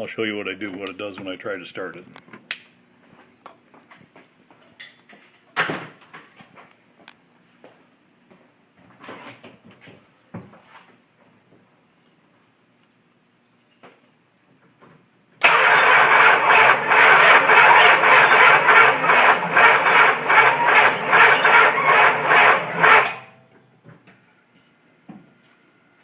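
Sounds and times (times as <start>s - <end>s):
starter cranking engine: 15.4s - 23.3s.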